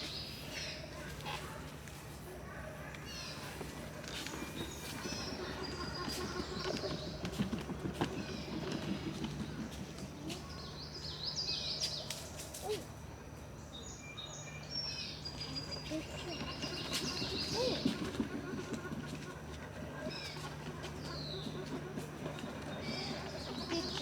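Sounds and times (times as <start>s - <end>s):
small birds chirping: 13.6s - 24.0s.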